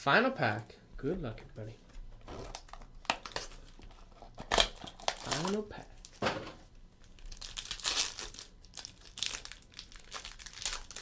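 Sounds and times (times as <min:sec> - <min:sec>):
card pack wrapper tearing and crinkling: 0:02.2 - 0:06.2, 0:07.0 - 0:11.0.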